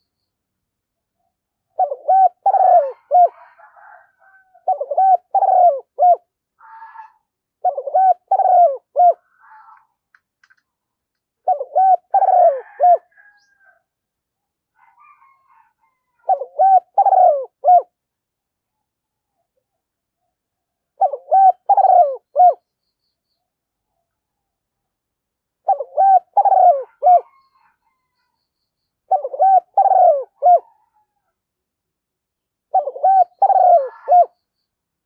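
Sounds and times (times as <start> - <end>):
dove cooing: 1.7 - 9.2, 11.4 - 13.4, 14.8 - 18.0, 21.0 - 22.6, 25.6 - 28.0, 29.1 - 31.2, 32.7 - 34.4
faint high chirps: 34.0 - 34.9.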